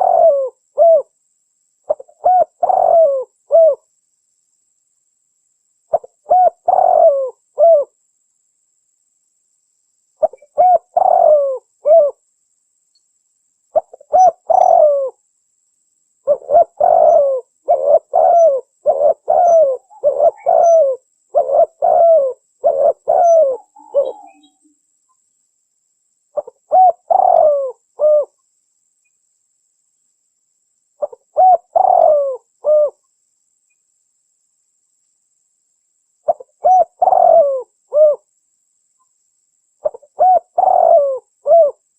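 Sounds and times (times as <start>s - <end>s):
dove cooing: 0.0s - 1.1s, 1.9s - 3.8s, 5.9s - 8.0s, 10.2s - 12.2s, 13.7s - 15.2s, 16.2s - 24.6s, 26.4s - 28.4s, 31.0s - 33.0s, 36.3s - 38.3s, 39.8s - 41.8s.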